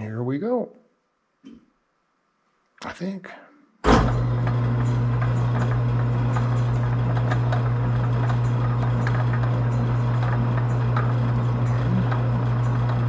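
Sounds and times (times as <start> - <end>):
metal lathe humming: 4.0 - 13.0.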